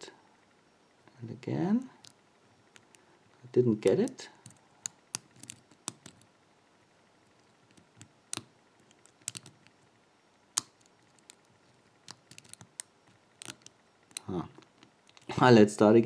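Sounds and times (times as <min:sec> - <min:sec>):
lock pick clicking in padlock: 0:03.8 - 0:06.3, 0:07.3 - 0:09.8, 0:10.6 - 0:15.3.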